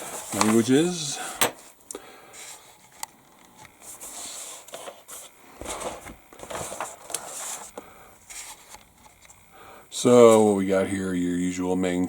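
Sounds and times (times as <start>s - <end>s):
paper pages rustling: 0.0s - 1.0s, 2.4s - 9.4s.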